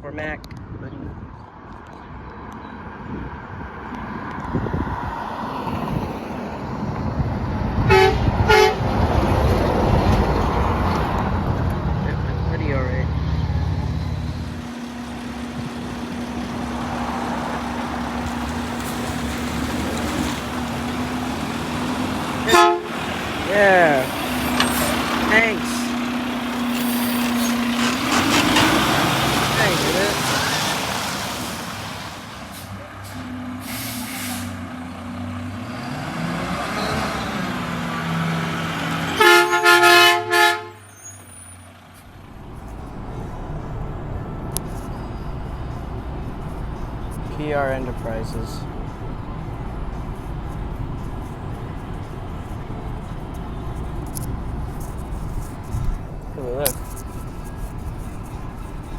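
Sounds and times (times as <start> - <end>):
road traffic rumble: 0.0 - 58.9
truck engine running: 7.0 - 33.8, 34.5 - 58.9
truck air horn blasts: 7.8 - 9.0, 21.1 - 26.0, 39.0 - 41.1.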